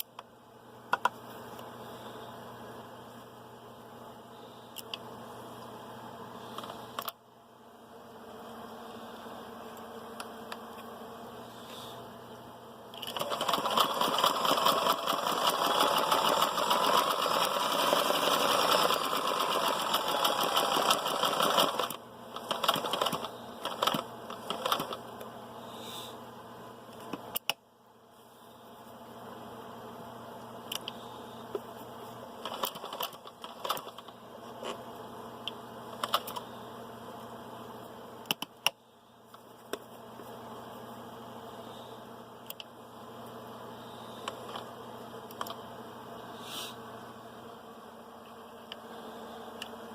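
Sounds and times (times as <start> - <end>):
clicks and taps: 0.9 - 1.2, 38.2 - 38.8
sewing machine sewing: 13.0 - 25.0, 32.4 - 34.1.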